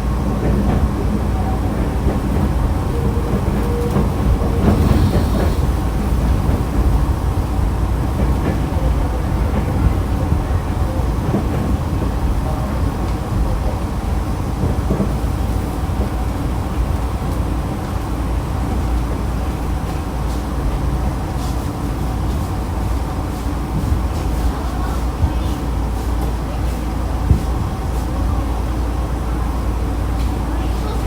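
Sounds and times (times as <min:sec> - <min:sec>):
train wheels and motors rumbling: 0:00.0 - 0:31.0.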